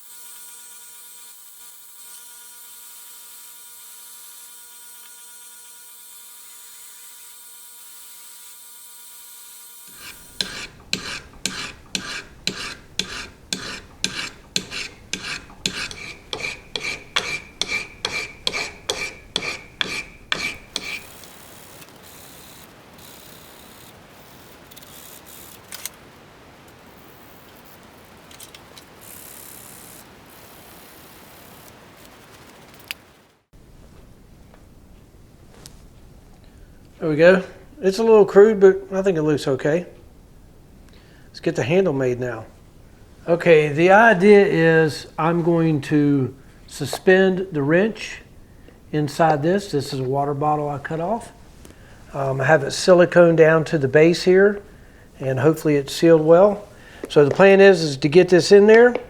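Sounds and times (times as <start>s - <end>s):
hand file rasping on steel: 9.9s - 21.3s
faint steady hum: 33.6s - 59.0s.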